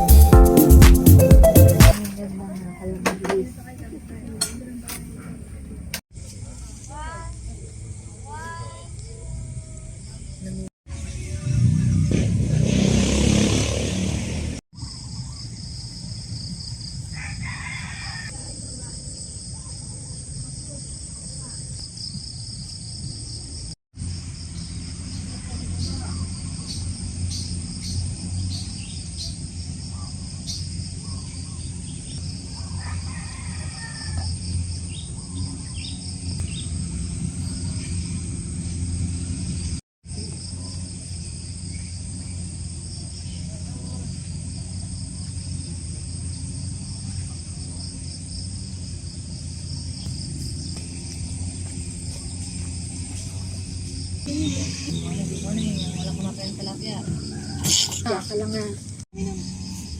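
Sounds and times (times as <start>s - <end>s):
rooster crowing: 17.0s - 18.5s, 32.4s - 34.5s, 55.7s - 58.5s
high insect trilling: 35.8s - 59.9s
low hum: 36.4s - 39.8s.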